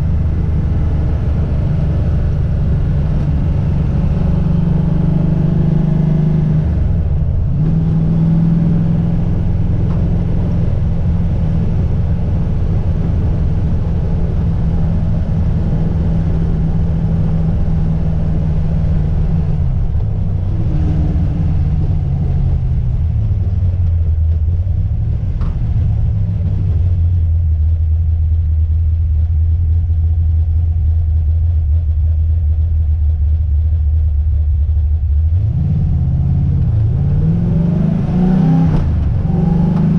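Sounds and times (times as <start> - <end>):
car engine and road drone: 0.0 - 39.9.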